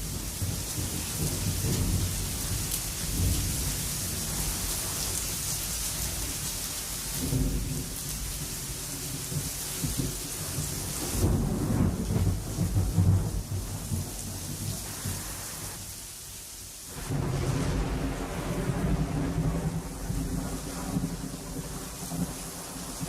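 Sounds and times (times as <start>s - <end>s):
thunder rumbling: 0.0s - 5.2s, 7.1s - 15.7s, 16.9s - 23.0s
rain hissing: 0.0s - 23.0s.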